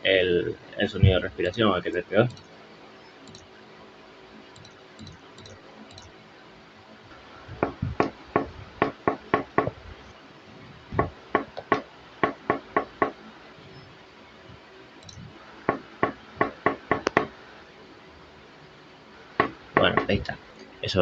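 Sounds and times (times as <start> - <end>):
sharp evenly spaced knocks: 7.5 - 10.1, 10.9 - 13.3, 15.0 - 17.4, 19.4 - 20.4.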